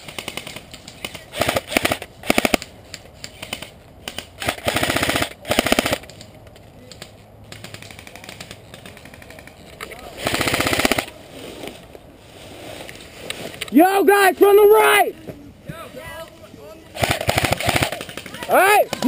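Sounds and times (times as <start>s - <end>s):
airsoft guns firing bursts: 0.0s - 6.1s, 10.2s - 11.1s, 16.9s - 19.0s.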